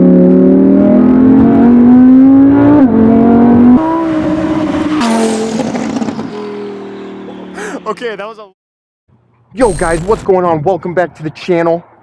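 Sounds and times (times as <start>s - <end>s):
car engine accelerating hard: 0.0s - 7.9s.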